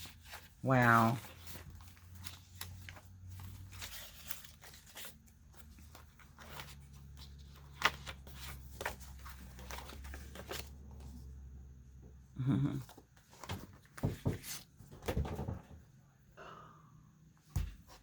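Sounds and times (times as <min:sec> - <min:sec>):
paper rustling: 0:00.0 - 0:11.3.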